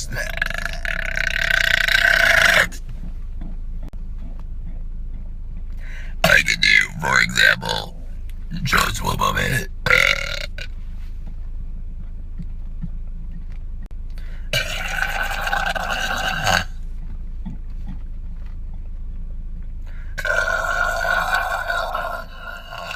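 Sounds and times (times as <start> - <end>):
man burping: 0.0 - 2.8, 9.9 - 10.7, 14.5 - 16.8, 20.2 - 22.9.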